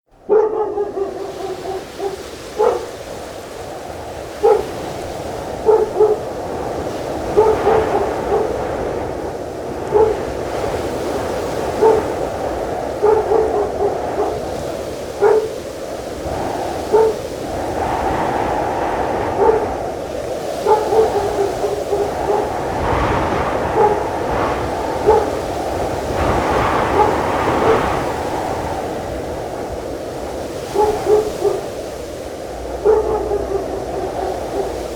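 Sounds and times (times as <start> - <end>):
sea: 0.0 - 34.9
dog barking: 0.2 - 29.7, 30.3 - 34.9
wind rushing: 0.2 - 34.9.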